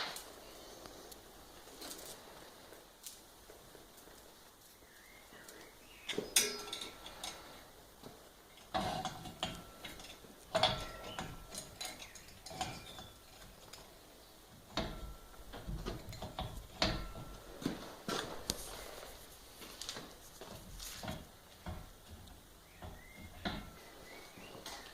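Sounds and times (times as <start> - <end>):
metal parts clinking: 6.1 - 7.5, 8.6 - 13.9.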